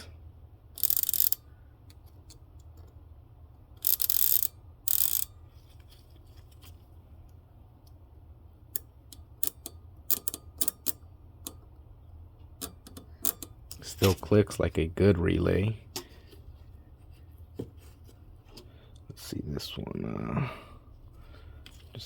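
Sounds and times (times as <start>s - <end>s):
relay clicking: 0.8s - 1.4s.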